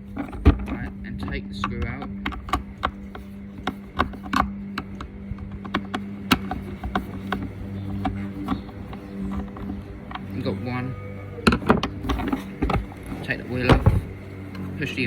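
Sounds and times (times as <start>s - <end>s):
screwdriver clicks and taps: 0.2s - 10.4s.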